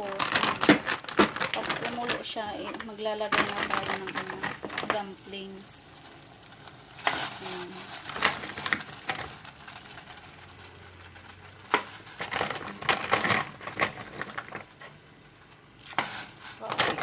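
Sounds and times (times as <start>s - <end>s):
plastic packaging crinkling: 0.0s - 17.0s.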